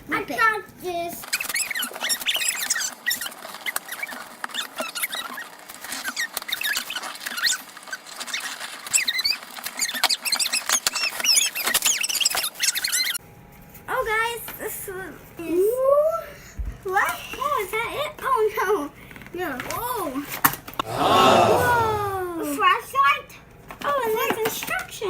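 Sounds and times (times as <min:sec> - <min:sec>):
packaging crinkling: 0:01.2 - 0:13.2
short high squeaks: 0:01.3 - 0:13.2.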